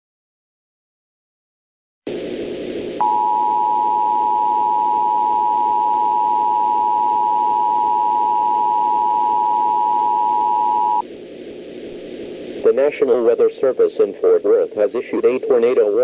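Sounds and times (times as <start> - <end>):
static hiss: 2.1 - 16.0
two-tone electronic alert tone: 3.0 - 11.0.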